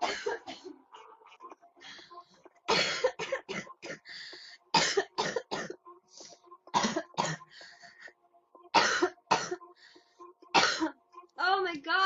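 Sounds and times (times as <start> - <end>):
girl coughing: 0.0 - 0.7, 2.7 - 4.0, 4.8 - 5.8, 6.7 - 7.4, 8.8 - 9.6, 10.6 - 11.0.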